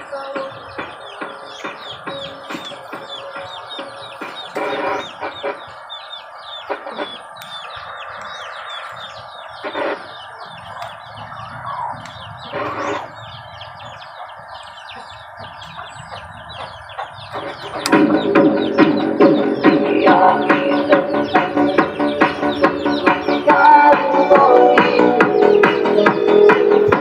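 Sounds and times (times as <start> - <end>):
loud music: 0.0 - 5.8, 17.4 - 27.0
chickens clucking: 0.0 - 27.0
high falling chicken chirps: 0.7 - 24.1.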